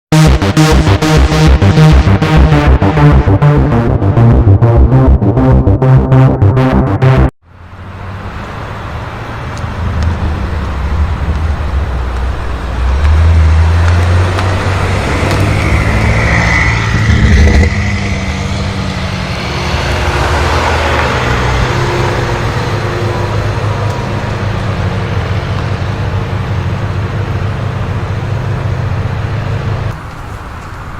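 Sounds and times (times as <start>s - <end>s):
high whine: 0.1s - 7.3s, 9.8s - 29.9s
car engine deep rumble: 0.2s - 30.9s.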